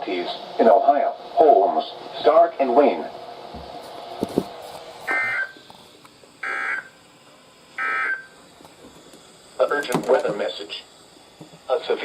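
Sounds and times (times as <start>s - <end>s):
harsh digital data bursts: 5.1s - 5.6s, 6.4s - 7.0s, 7.8s - 8.4s.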